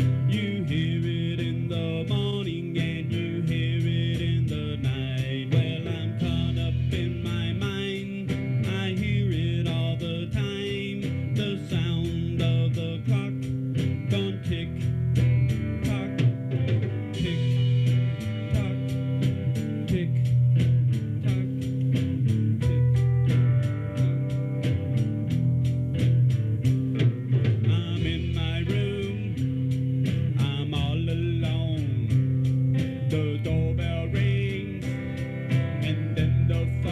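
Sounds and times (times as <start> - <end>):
bass line: 0.0 - 36.9
guitar-led music: 0.0 - 36.9
steady drum beat: 0.0 - 36.9.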